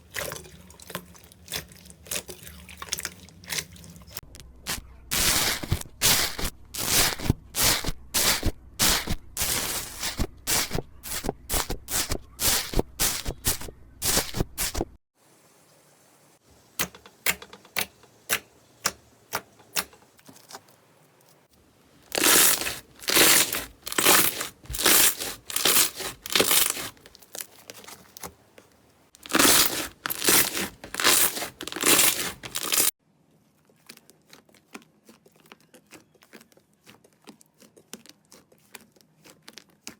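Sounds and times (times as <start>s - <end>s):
slime crackling and popping: 4.6s - 14.9s, 22.1s - 27.8s, 29.2s - 32.9s.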